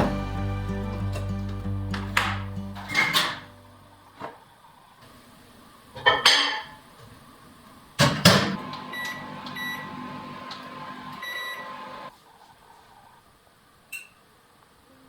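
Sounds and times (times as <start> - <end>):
microwave oven humming: 8.4 - 12.1.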